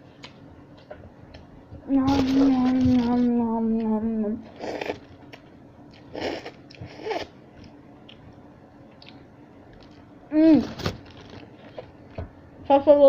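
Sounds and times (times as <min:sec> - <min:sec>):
man chewing food: 0:04.5 - 0:10.1.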